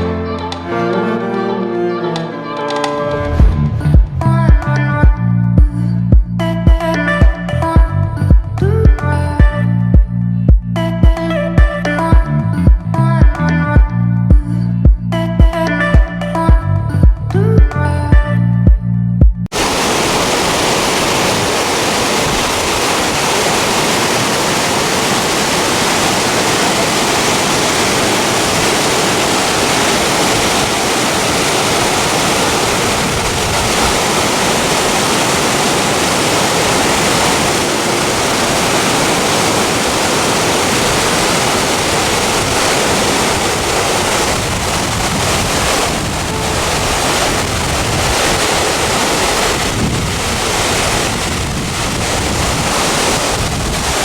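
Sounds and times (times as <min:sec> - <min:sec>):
waterfall rushing: 0:19.5 - 0:54.0.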